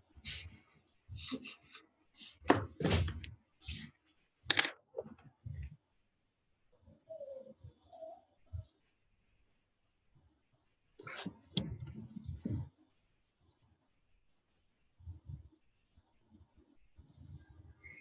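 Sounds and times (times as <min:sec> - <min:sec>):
drawing strokes on a board: 0:10.2 - 0:18.0.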